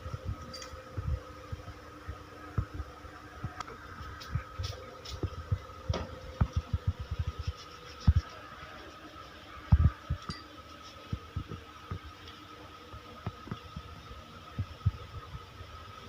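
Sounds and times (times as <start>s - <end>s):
steady high-pitched hum: 0.0s - 16.0s
light clink: 10.2s - 10.5s.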